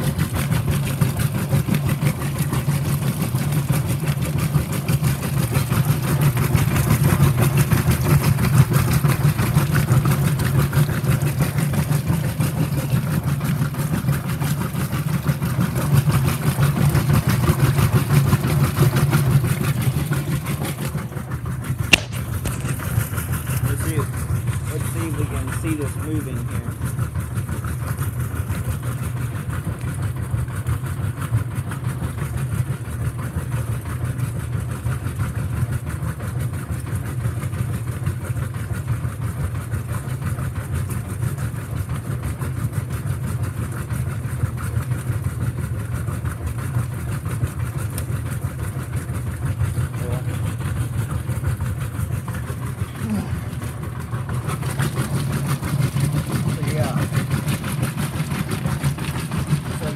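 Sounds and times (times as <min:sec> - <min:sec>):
washing machine motor hum: 0:52.5 - 0:58.2, 0:58.9 - 0:59.9.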